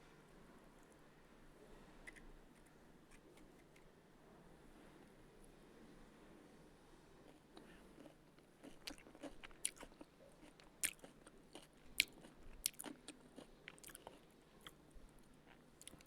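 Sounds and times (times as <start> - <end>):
person chewing crunchy food: 7.3 - 14.8, 15.4 - 16.0.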